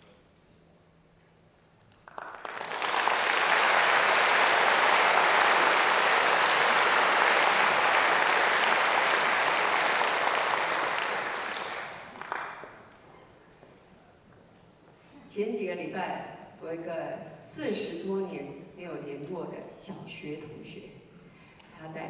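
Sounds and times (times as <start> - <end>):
audience applauding: 2.0 - 12.8.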